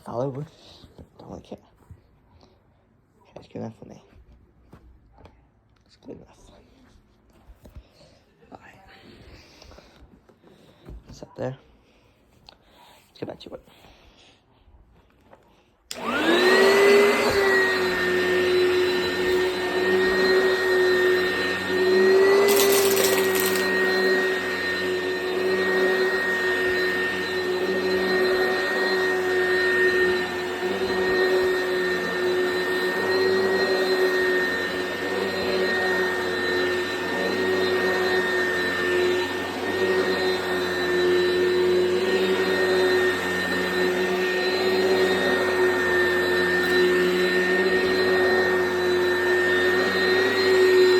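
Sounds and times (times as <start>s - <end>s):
vacuum cleaner running: 15.9s - 50.9s.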